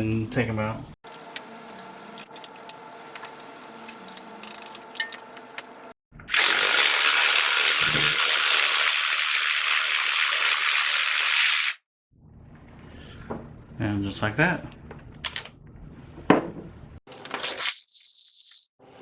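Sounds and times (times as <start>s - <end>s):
tools clicking and clinking: 1.0s - 5.9s, 17.1s - 17.7s
battery-powered ratchet running: 1.1s - 11.8s.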